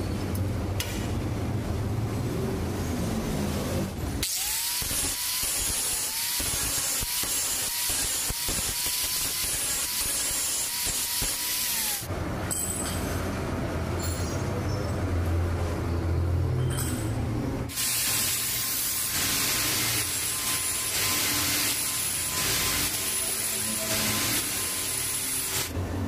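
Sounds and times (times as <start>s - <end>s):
steel grinding on abrasive wheel: 4.7s - 12.1s, 19.0s - 25.7s.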